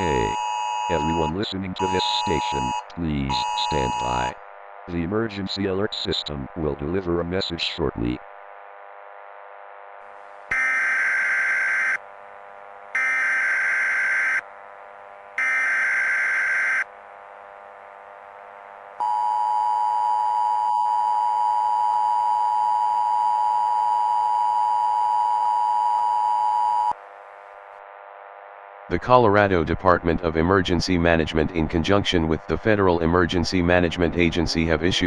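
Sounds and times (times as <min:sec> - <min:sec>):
screeching digital data tones: 0:00.0 - 0:04.3, 0:10.5 - 0:12.0, 0:15.4 - 0:16.9.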